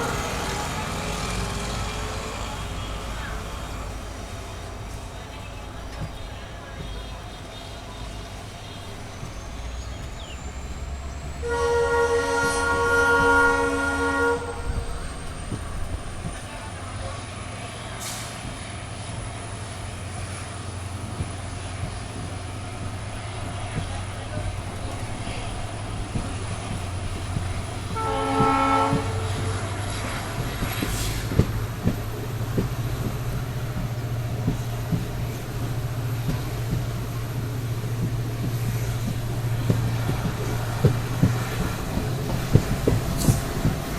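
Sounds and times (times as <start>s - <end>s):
locomotive horn blast: 0.0s - 3.2s, 11.4s - 16.2s, 25.0s - 31.4s
diesel engine drone: 0.0s - 43.9s
moving train rumble: 0.0s - 43.9s
wheels clacking over rail joints: 0.0s - 43.9s
multi-tone horn blast: 11.4s - 15.2s, 27.9s - 29.8s.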